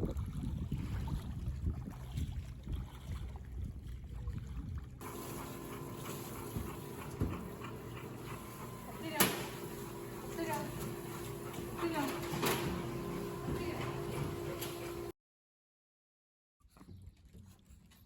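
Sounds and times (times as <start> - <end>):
wind buffeting microphone: 0.0 - 5.0
steady hum: 5.0 - 15.1.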